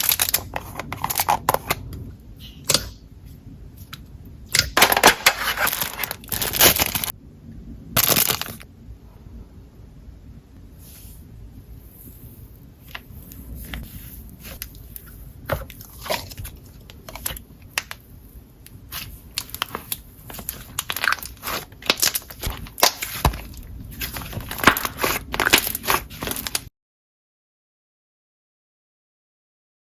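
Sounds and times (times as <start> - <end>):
slime crackling and popping: 4.5 - 7.1, 8.0 - 8.6, 18.7 - 26.7.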